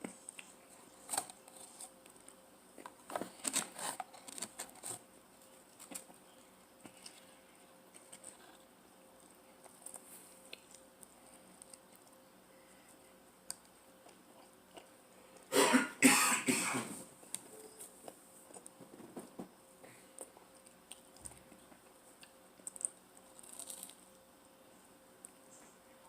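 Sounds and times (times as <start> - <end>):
person coughing: 15.5 - 17.0.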